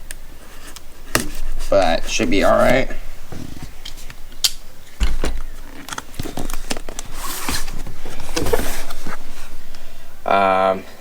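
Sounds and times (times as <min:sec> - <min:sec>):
cardboard rustling: 0:00.0 - 0:10.4.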